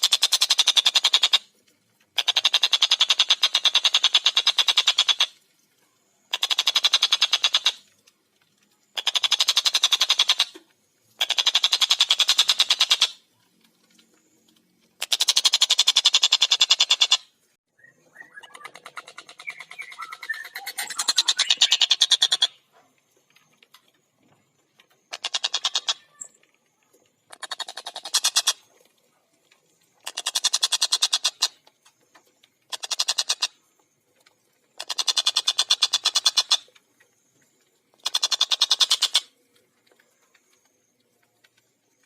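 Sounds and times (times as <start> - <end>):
kingfisher rattling calls: 2.2 - 5.4, 6.3 - 7.8, 8.9 - 10.6, 11.2 - 13.2, 15.0 - 17.3, 18.1 - 22.7, 25.1 - 26.4, 27.3 - 28.7, 30.0 - 31.6, 32.7 - 33.6, 34.8 - 36.7, 38.0 - 39.4.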